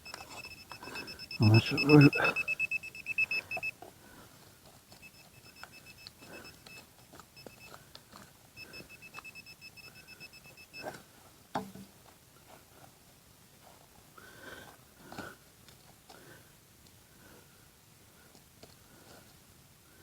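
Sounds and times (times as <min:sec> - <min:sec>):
metal detector pinpointer beeping: 0:00.0 - 0:03.7, 0:04.9 - 0:07.8, 0:08.6 - 0:10.9.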